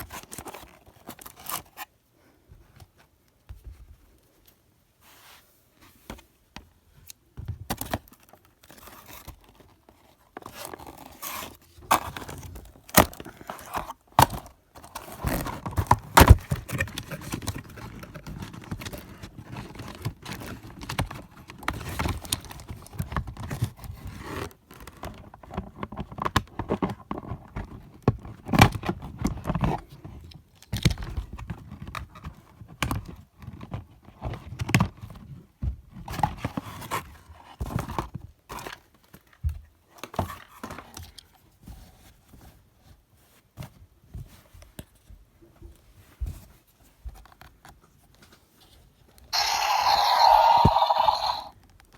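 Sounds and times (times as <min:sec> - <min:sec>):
cardboard and plastic tearing: 0:10.4 - 0:21.0.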